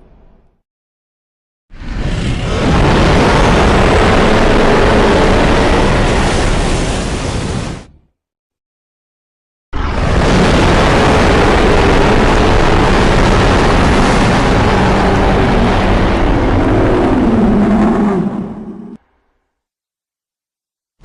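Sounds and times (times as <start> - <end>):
monster roar: 1.9 - 6.3, 9.8 - 19.0.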